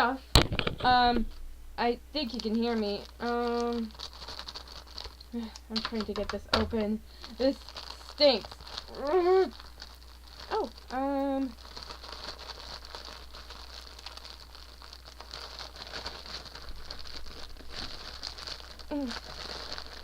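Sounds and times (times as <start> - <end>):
packaging crinkling: 2.2 - 20.0.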